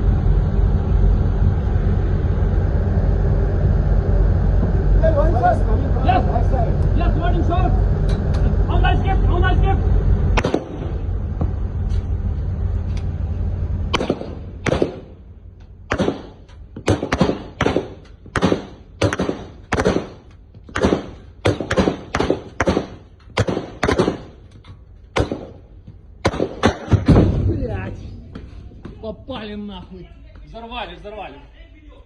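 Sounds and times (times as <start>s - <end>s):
low steady rumble: 0.0s - 32.0s
rifle gunshots: 10.4s - 11.0s, 13.9s - 15.2s, 15.9s - 24.4s, 25.2s - 25.6s, 26.2s - 27.5s.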